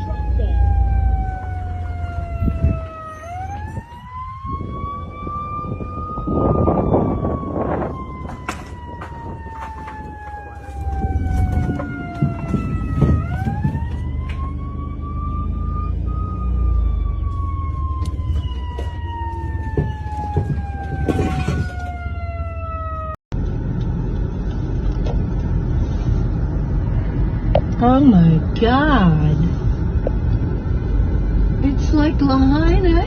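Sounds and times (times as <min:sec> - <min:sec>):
siren wailing: 0:00.0 - 0:23.2
low rumbling background: 0:23.3 - 0:33.0.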